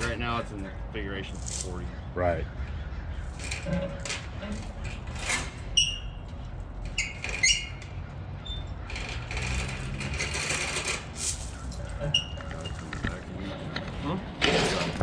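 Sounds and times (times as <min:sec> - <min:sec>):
forklift engine rumbling: 0:00.0 - 0:15.0
short high squeaks: 0:03.4 - 0:12.9.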